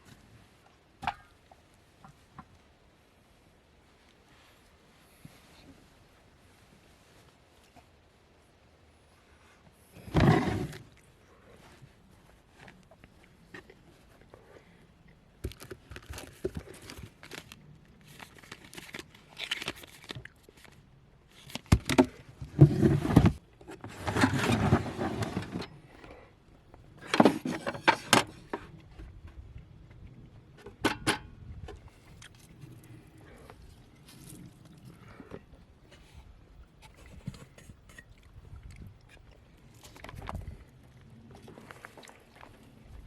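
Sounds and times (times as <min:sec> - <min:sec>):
rustling and crinkling of handled things: 0:09.1 - 0:31.0, 0:31.7 - 0:43.0.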